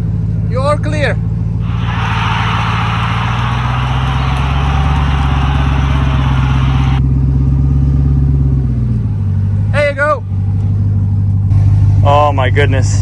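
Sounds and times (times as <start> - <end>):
truck engine running: 1.6 - 7.0.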